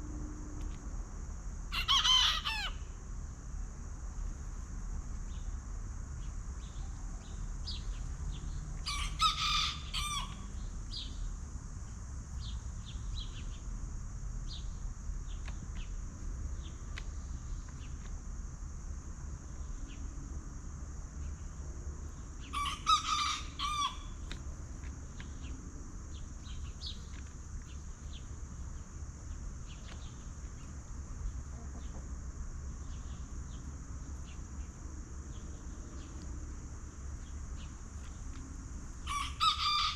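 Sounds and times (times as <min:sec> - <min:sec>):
rooster crowing: 0:01.7 - 0:02.9, 0:08.8 - 0:10.5, 0:22.5 - 0:24.2, 0:39.0 - 0:39.9
chickens clucking and chirping: 0:22.4 - 0:24.5, 0:26.1 - 0:33.6, 0:37.3 - 0:39.9.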